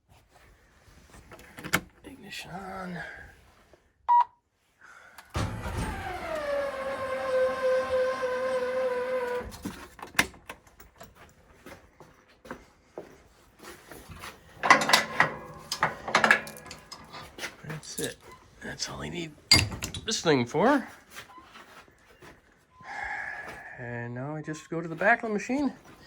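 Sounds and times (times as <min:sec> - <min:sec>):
electric motor whine: 0:05.4 - 0:09.6
handling clicks and knocks: 0:14.0 - 0:18.3, 0:19.5 - 0:20.2.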